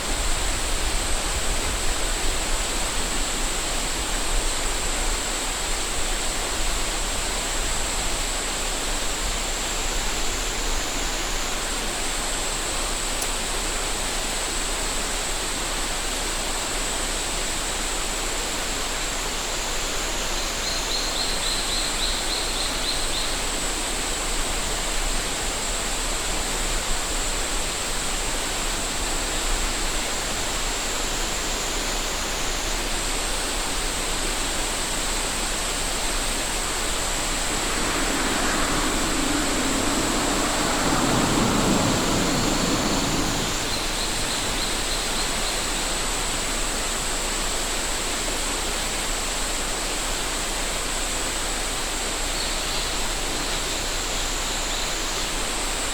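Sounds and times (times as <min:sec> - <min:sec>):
mountain river rushing: 0:33.3 - 0:47.3
cicadas droning: 0:33.6 - 0:46.0
louder lower rush: 0:34.8 - 0:45.4.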